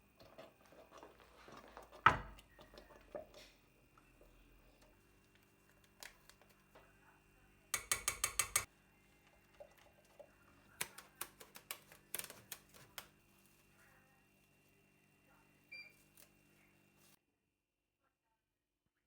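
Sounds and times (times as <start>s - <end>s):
utensils clicking and knocking: 7.8s - 8.7s.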